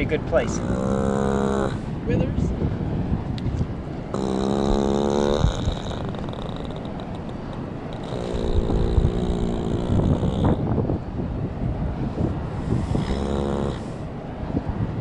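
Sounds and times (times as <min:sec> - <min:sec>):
horse snoring: 0:00.4 - 0:01.9, 0:04.1 - 0:10.6, 0:12.8 - 0:14.0.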